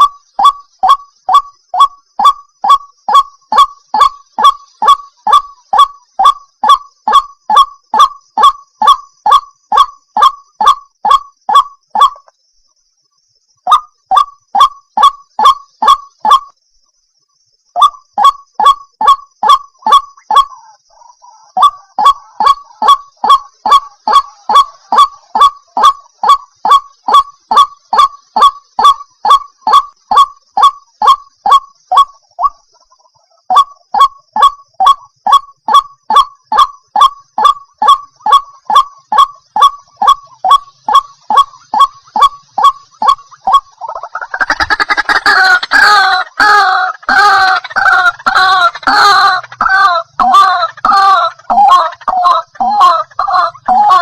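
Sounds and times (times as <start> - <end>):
waterhen honking calls: 17.8 - 32.5, 35.7 - 54.0.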